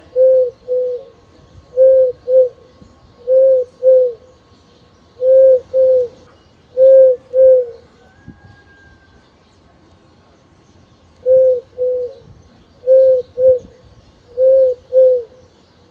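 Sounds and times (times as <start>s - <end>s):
dove cooing: 0.0s - 4.3s, 5.2s - 8.6s, 11.2s - 15.4s.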